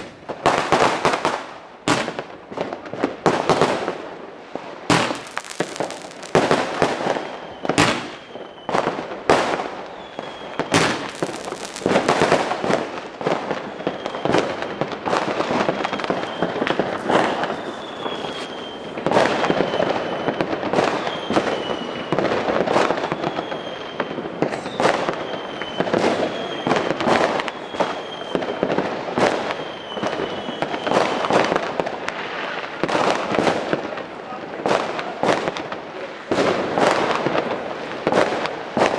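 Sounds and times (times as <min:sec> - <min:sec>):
fireworks bangs and crackling: 0:00.0 - 0:38.9
high firework whistles: 0:04.8 - 0:31.6.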